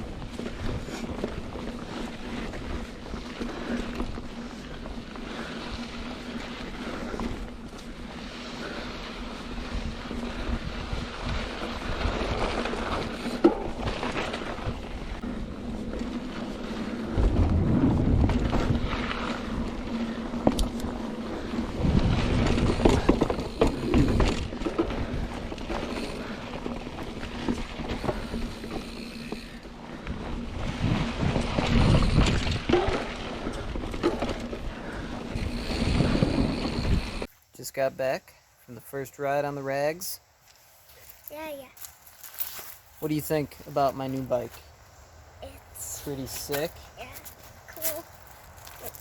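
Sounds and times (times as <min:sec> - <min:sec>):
wind buffeting microphone: 0:00.0 - 0:37.3
bike rolling on dirt trail: 0:00.0 - 0:49.0.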